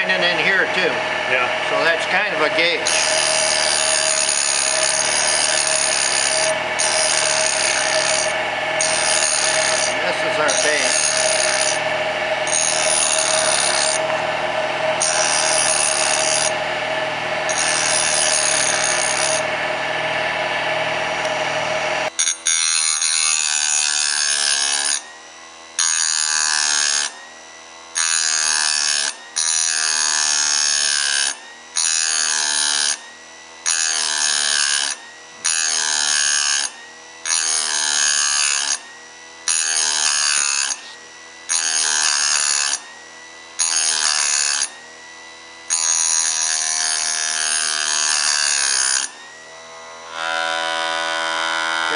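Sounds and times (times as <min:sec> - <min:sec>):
low machine hum: 0:00.0 - 0:22.1
grinding wheel grinding metal: 0:00.0 - 0:51.9.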